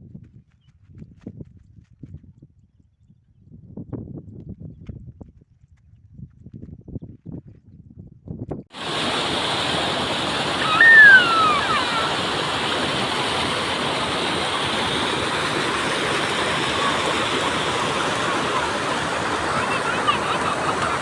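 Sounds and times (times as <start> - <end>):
flowing rainwater rushing: 8.8 - 21.0.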